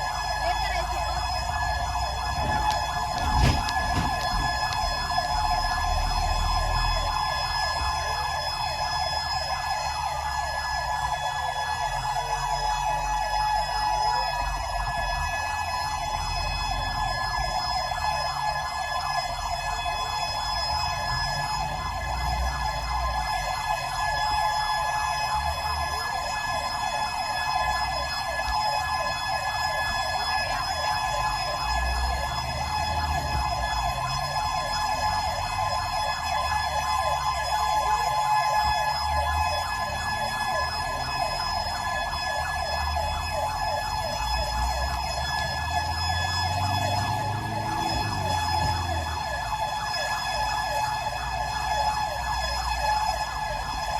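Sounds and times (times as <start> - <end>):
emergency siren warbling: 0.0 - 53.9
vehicle engine and road rumble: 0.7 - 6.7.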